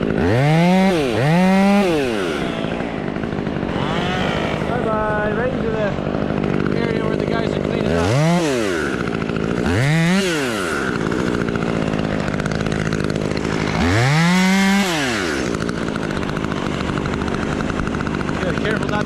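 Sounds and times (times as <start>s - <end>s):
chainsaw idling and revving: 0.0s - 19.0s.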